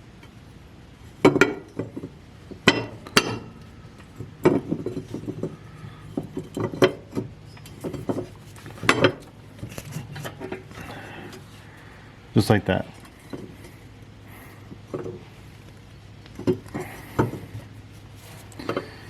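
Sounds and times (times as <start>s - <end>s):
metal clinking and knocking: 1.2s - 10.8s.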